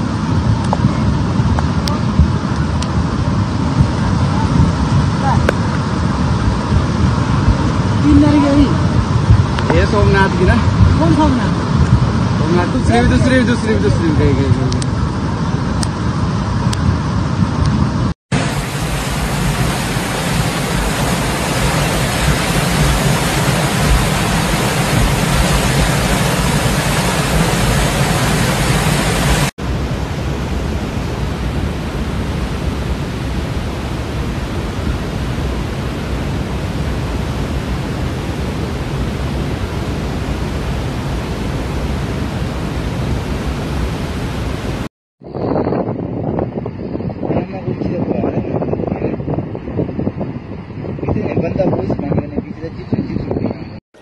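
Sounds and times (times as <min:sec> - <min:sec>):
floodwater rushing: 0:18.3 - 0:44.9.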